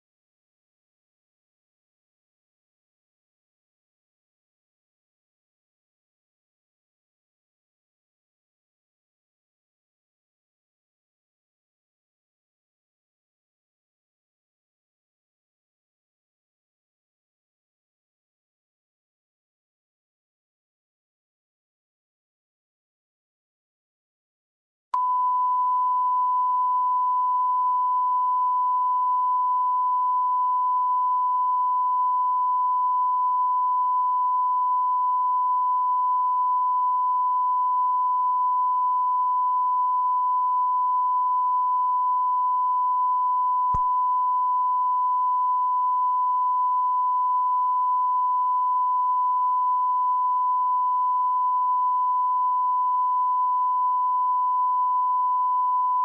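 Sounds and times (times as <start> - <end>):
steady test tone beep: 25.0 - 56.0.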